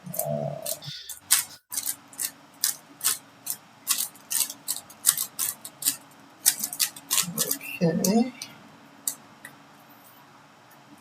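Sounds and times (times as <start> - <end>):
puzzle cube plastic clicks: 1.3 - 7.6.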